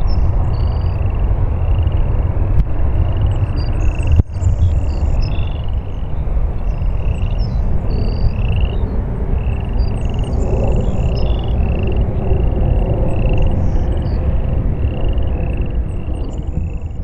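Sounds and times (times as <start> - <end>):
jet engines rumbling: 0.0 - 17.0.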